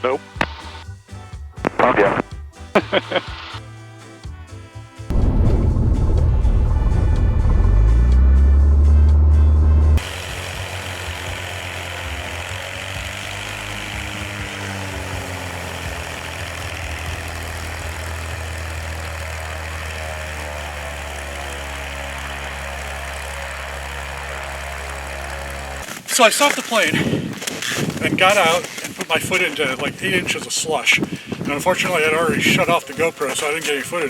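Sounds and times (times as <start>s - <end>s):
light aircraft propeller engine: 5.1s - 25.9s.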